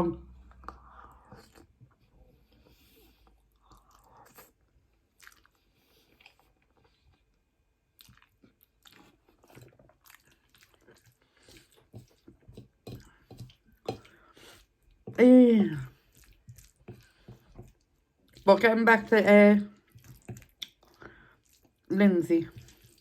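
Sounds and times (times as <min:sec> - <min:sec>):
chewing and mouth smacks: 0:03.6 - 0:15.0, 0:15.9 - 0:18.5, 0:19.7 - 0:21.9, 0:22.5 - 0:23.0.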